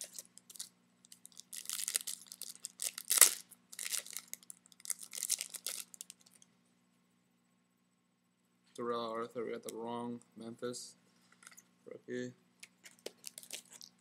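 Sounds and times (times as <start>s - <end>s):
foil pack ripping: 0.0s - 0.7s, 1.3s - 6.0s, 13.2s - 13.9s
foil wrapper crinkling: 0.0s - 6.4s, 12.9s - 14.0s.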